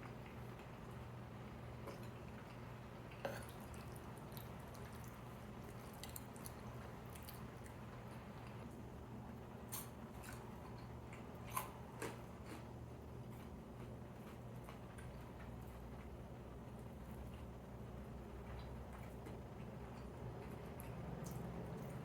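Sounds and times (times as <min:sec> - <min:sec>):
chewing: 0:01.8 - 0:08.8, 0:09.7 - 0:16.1, 0:18.4 - 0:22.0.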